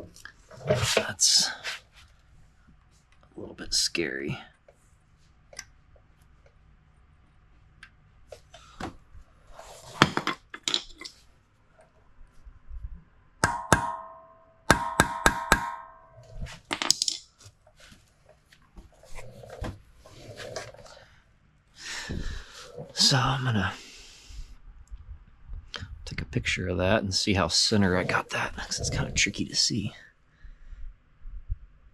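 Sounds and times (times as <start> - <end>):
hammer tapping steel punch: 13.4 - 16.0.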